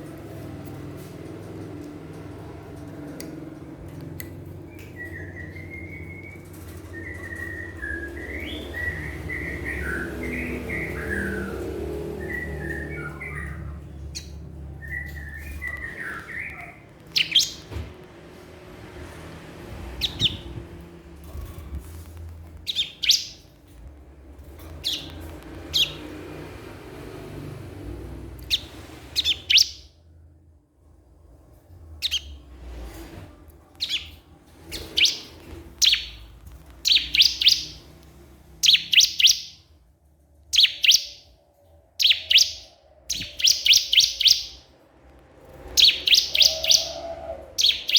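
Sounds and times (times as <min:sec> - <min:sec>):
low background rumble: 0:00.0 - 0:47.9
bird high chirps: 0:04.7 - 0:17.9, 0:20.0 - 0:20.7, 0:22.7 - 0:23.6, 0:24.7 - 0:26.2, 0:28.4 - 0:29.9, 0:32.0 - 0:32.4, 0:33.8 - 0:38.0, 0:38.6 - 0:39.7, 0:40.5 - 0:41.4, 0:42.0 - 0:44.7, 0:45.6 - 0:47.9.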